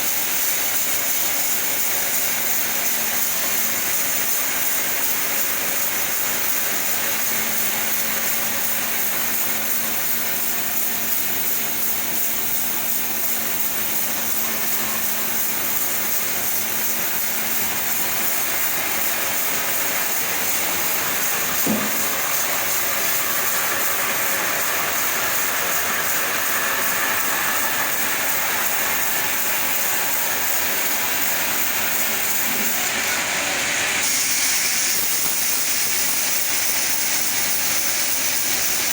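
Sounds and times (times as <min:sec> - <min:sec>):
chainsaw cutting log: 0:17.8 - 0:38.9
brief knock: 0:21.6 - 0:22.2.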